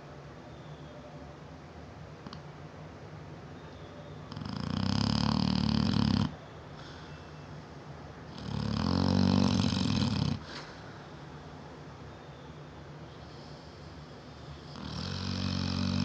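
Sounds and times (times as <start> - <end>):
dog snoring loudly: 4.3 - 6.4, 8.3 - 10.6, 14.4 - 16.0.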